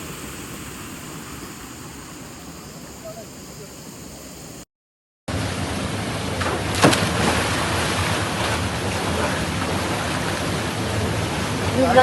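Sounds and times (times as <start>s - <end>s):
waterfall rushing: 5.3s - 12.0s.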